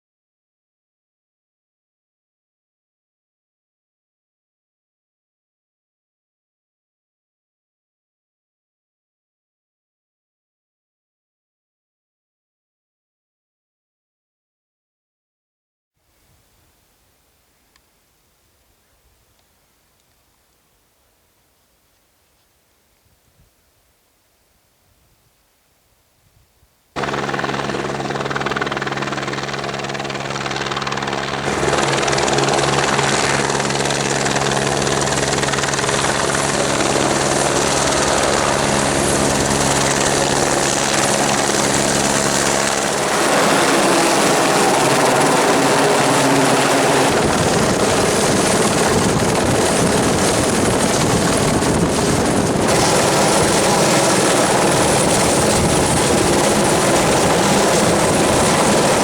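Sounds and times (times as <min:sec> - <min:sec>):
helicopter rotor and engine: 0:27.0 - 0:59.0.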